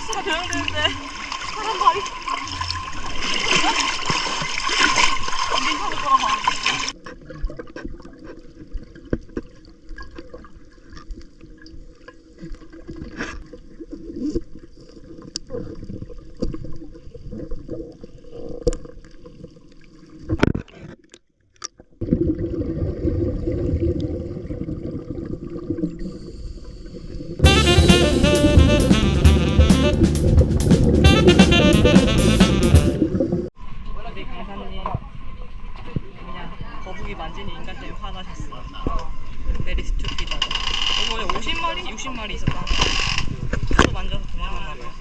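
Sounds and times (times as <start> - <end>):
water sloshing and gurgling: 0.0 - 21.2.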